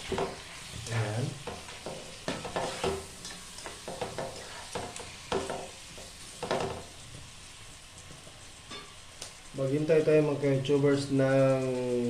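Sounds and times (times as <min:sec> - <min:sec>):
chicken sizzling in hot oil: 0:00.0 - 0:12.0
utensil scraping and knocking pan: 0:01.4 - 0:05.7.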